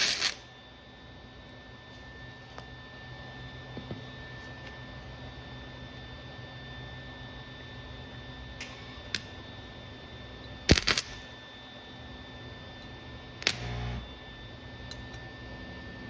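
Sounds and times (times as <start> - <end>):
steady electrical hum: 0.0 - 16.0
short buzz: 13.4 - 14.1.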